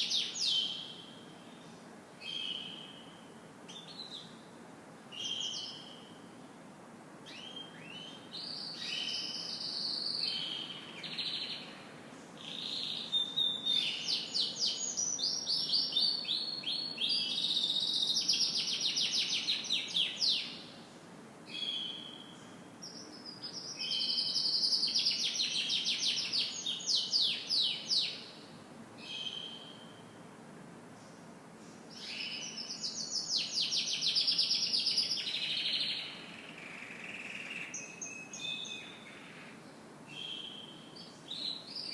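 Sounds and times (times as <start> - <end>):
canary singing trills: 0.0 - 1.6, 2.2 - 4.4, 7.3 - 11.7, 12.4 - 20.7, 21.5 - 28.3, 29.0 - 30.1, 31.9 - 41.9.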